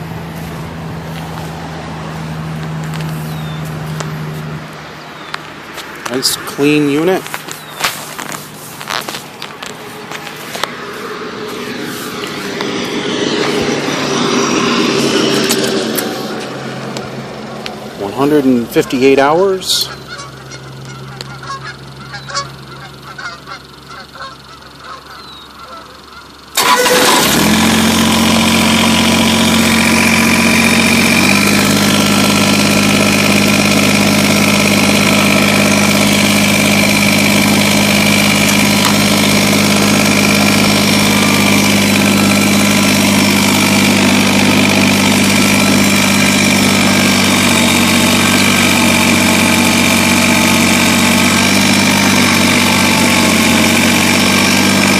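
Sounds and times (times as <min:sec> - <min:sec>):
diesel tractor engine running: 0:00.0 - 0:54.9
faint goose honks: 0:19.9 - 0:26.4.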